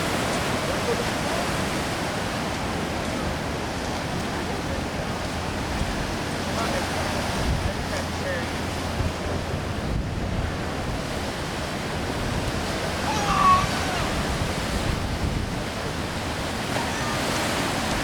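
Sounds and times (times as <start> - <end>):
rushing water: 0.0 - 18.0
wind buffeting microphone: 0.0 - 18.0.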